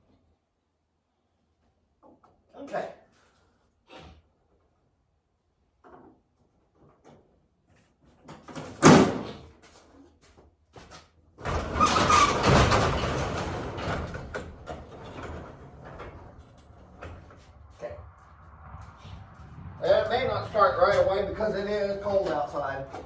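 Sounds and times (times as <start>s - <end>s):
door sliding with rumbling scrape: 11.4s - 23.0s.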